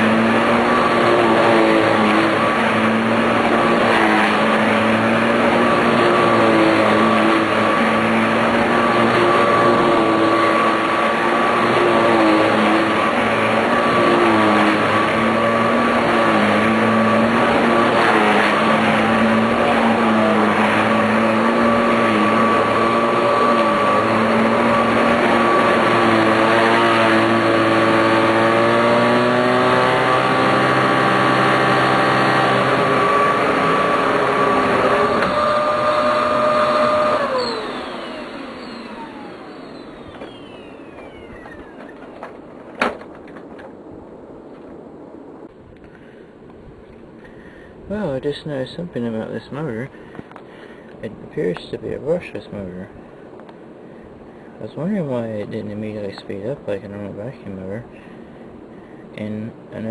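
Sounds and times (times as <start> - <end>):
vacuum cleaner motor whine: 0.0 - 42.4.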